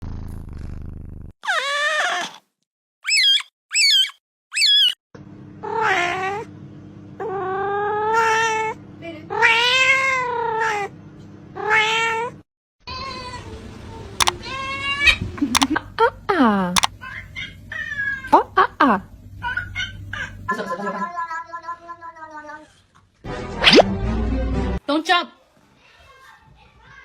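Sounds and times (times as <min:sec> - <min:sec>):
cat chirps: 0:01.4 - 0:02.4, 0:03.1 - 0:05.0.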